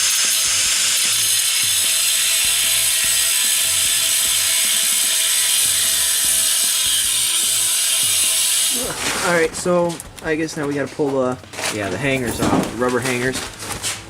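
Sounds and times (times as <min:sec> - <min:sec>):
power tool cutting metal: 0:00.0 - 0:09.3.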